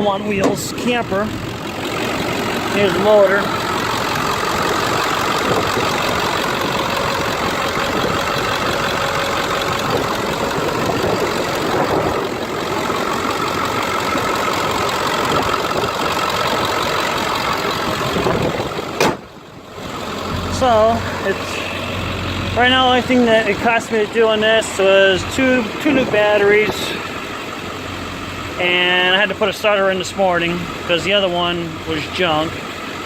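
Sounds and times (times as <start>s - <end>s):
diesel engine idling: 0.0s - 33.0s.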